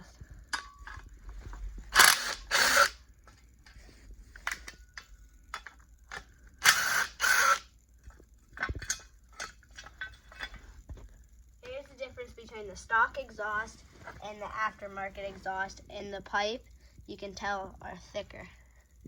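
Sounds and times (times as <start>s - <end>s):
socket ratchet clicking: 1.9s - 3.0s, 4.4s - 7.7s.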